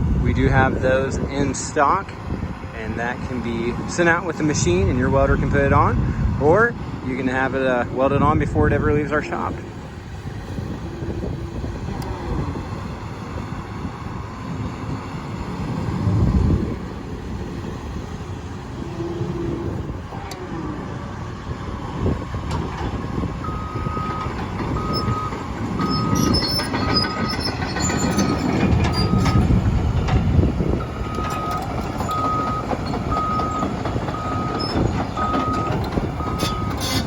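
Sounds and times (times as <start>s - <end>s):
excavator diesel engine running: 0.0s - 37.0s
hydraulic whines: 8.7s - 37.0s
travel alarm beeping: 23.4s - 29.6s, 30.8s - 37.0s.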